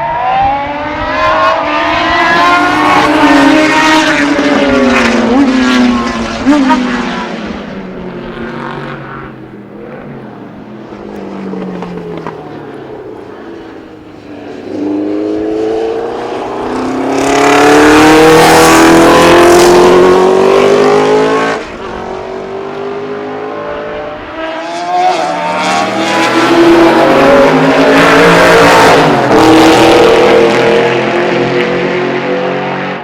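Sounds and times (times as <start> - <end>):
racing car engine revving: 0.0 - 12.4, 14.5 - 33.0.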